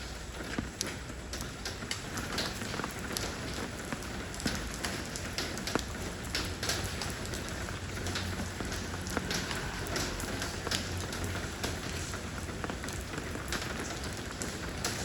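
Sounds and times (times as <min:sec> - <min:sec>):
rain on stones: 0:00.0 - 0:15.0.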